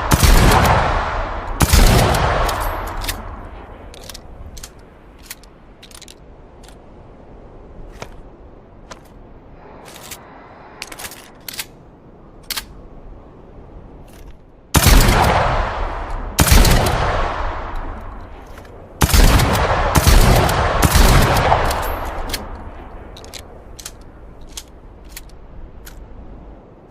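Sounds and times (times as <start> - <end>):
shotgun blasts echoing: 0.0 - 3.5, 14.8 - 17.8, 19.0 - 22.5
light clicks: 2.1 - 6.9, 21.3 - 26.3.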